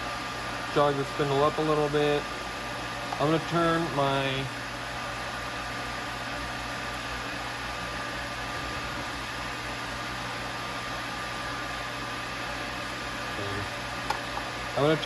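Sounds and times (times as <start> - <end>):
mill machine humming: 6.6 - 15.0.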